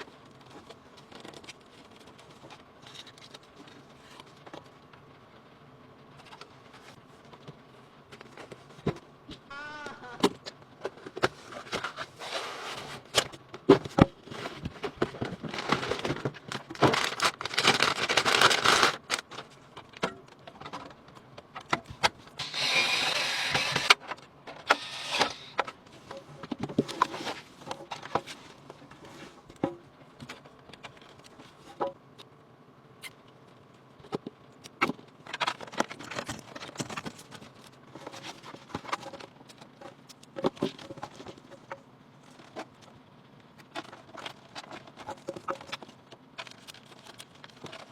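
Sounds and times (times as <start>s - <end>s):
computer parts clicking and scraping: 21.8s - 28.4s.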